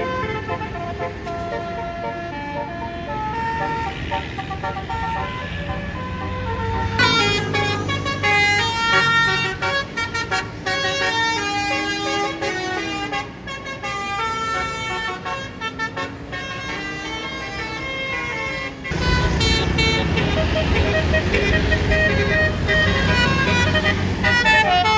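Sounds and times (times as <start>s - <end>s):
bus engine rumble: 0.0s - 24.9s
bus horn playing a tune: 0.0s - 24.9s.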